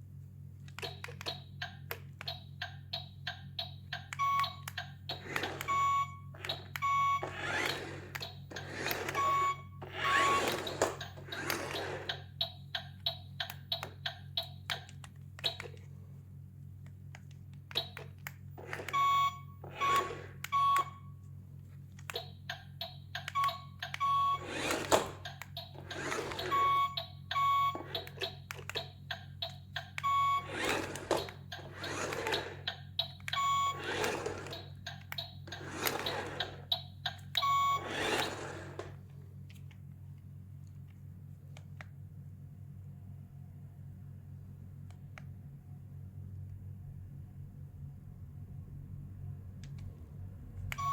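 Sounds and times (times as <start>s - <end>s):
steady low hum: 0.0s - 50.9s
short electronic beeps: 19.0s - 21.0s.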